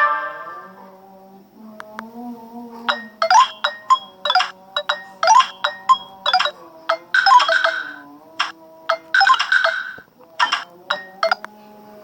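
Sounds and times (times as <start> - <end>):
phone ringtone melody: 2.9 - 11.4.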